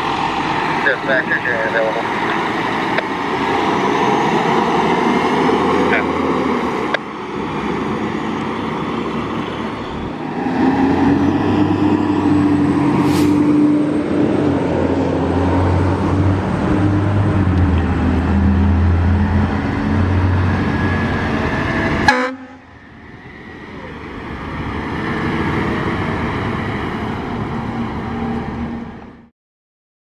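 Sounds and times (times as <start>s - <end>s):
fire truck engine rumble: 0.0s - 29.3s
quieter vehicle sound: 11.7s - 14.4s.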